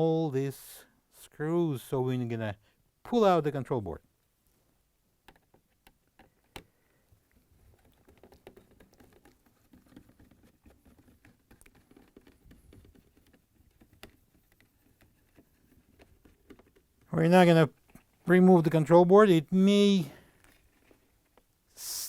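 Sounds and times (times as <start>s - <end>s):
screwdriver clicks and scratching: 7.7s - 16.9s.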